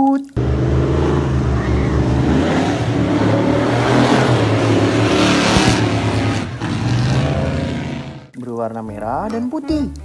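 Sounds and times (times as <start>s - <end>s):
vehicle engine running: 0.4s - 8.3s.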